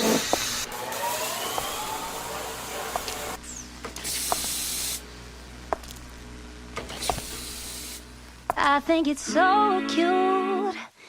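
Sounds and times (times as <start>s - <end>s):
hissing noise: 4.0s - 5.0s.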